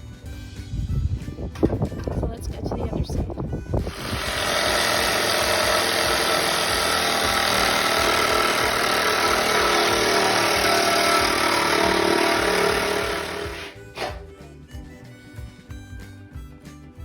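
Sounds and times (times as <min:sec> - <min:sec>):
machine running loudly: 0:03.9 - 0:14.2.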